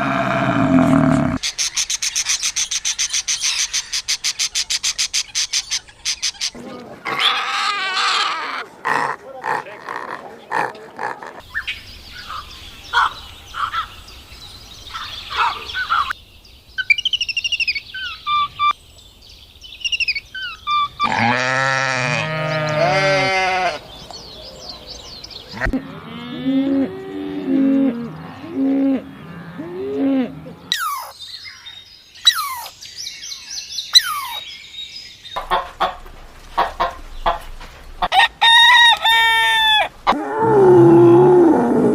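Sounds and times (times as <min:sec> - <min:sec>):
bleats and moos: 0:00.0 - 0:01.4
high bird-like chirps: 0:30.7 - 0:34.5.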